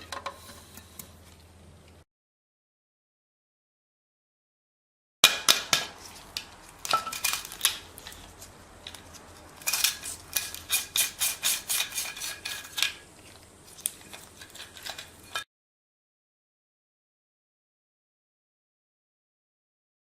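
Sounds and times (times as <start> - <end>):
hard parts clicking and clattering: 5.2 - 15.4.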